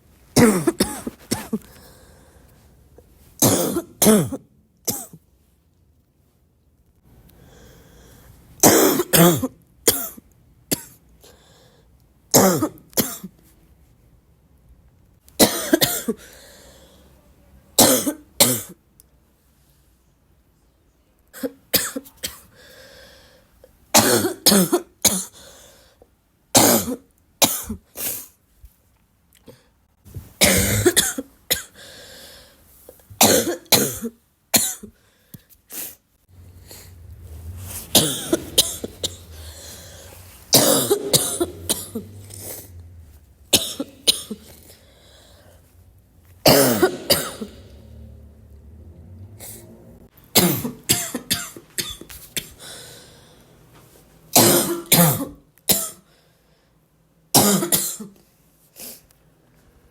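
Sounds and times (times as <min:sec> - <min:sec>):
person coughing harshly: 0:00.4 - 0:01.7, 0:03.4 - 0:05.2, 0:08.6 - 0:11.0, 0:12.3 - 0:13.3, 0:15.4 - 0:16.4, 0:17.8 - 0:18.8, 0:21.4 - 0:22.5, 0:24.0 - 0:25.4, 0:26.6 - 0:27.8, 0:30.4 - 0:31.8, 0:33.2 - 0:34.9, 0:36.6 - 0:45.5, 0:46.4 - 0:48.1, 0:50.4 - 0:52.6, 0:54.4 - 0:56.1, 0:57.4 - 0:58.2
breathing noise: 0:01.6 - 0:02.8, 0:16.2 - 0:17.2, 0:22.5 - 0:23.5, 0:31.7 - 0:32.8, 0:36.3 - 0:50.1, 0:52.6 - 0:53.5.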